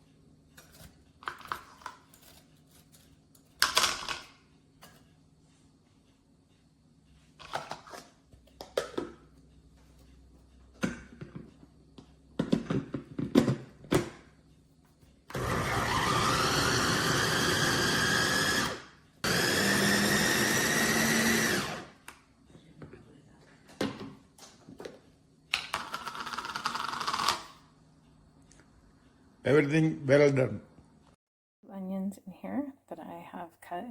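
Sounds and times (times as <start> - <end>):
electric food chopper motor: 15.3 - 22.1, 25.6 - 27.6.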